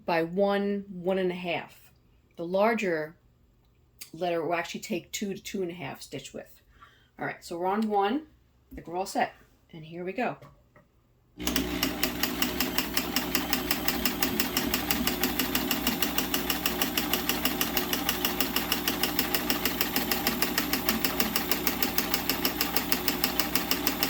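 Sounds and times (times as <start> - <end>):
motor hum: 11.4 - 24.0
sewing machine stitching: 11.4 - 24.0.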